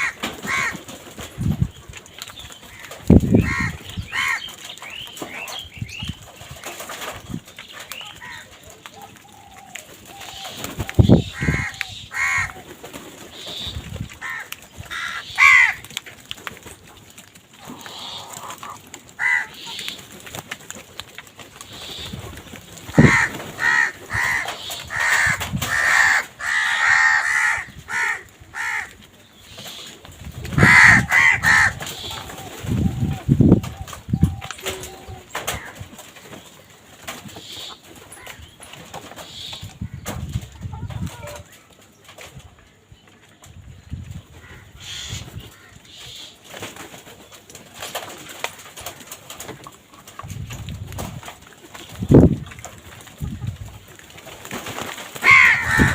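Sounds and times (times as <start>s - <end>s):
crows cawing: 0.0s - 0.8s, 2.7s - 4.5s, 8.2s - 8.5s, 11.2s - 12.6s, 14.2s - 15.8s, 17.6s - 19.9s, 22.9s - 29.0s, 30.6s - 32.1s, 55.2s - 55.9s
pigeons cooing: 0.0s - 16.6s, 17.3s - 20.5s, 21.6s - 40.0s, 54.6s - 55.9s
high bird calls: 1.5s - 12.6s, 13.2s - 15.8s, 17.6s - 20.1s, 44.4s - 46.4s.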